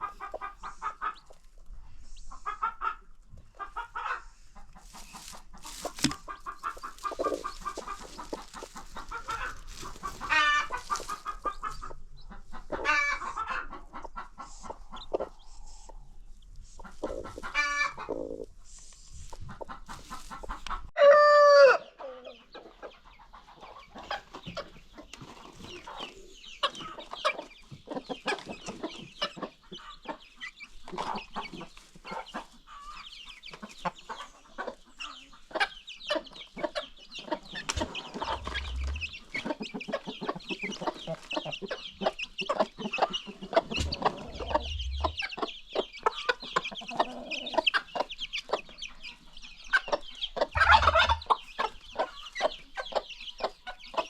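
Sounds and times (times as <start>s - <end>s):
chickens clucking: 0.0s - 54.0s
loud drawn-out chicken call: 21.0s - 21.9s, 50.6s - 51.4s.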